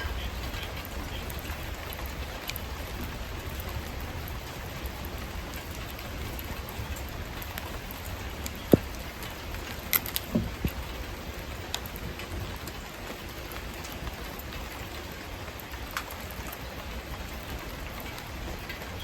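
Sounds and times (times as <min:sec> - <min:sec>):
fire pops: 0:00.0 - 0:14.5
wood fire crackling: 0:00.0 - 0:19.0.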